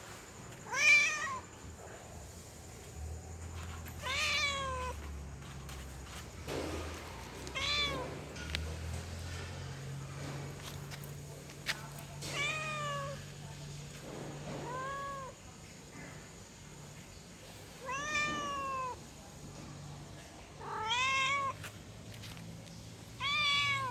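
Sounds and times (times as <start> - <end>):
cat meowing: 0.7 - 1.4, 4.0 - 5.0, 7.5 - 8.1, 12.3 - 13.2, 14.6 - 15.4, 17.8 - 19.0, 20.6 - 21.6, 23.2 - 23.9.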